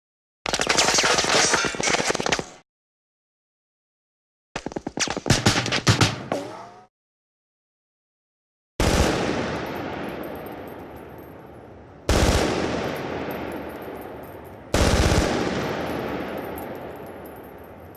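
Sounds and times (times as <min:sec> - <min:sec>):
faint high-pitched clinks: 0:09.6 - 0:12.1, 0:12.8 - 0:14.7, 0:15.5 - 0:17.9
machine gun bursts with echo: 0:12.1 - 0:13.0, 0:14.7 - 0:16.1.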